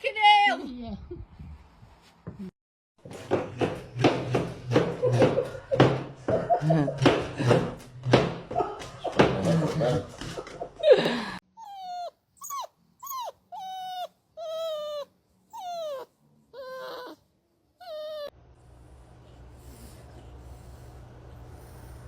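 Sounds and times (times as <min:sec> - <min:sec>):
dog whining: 0:11.5 - 0:18.4.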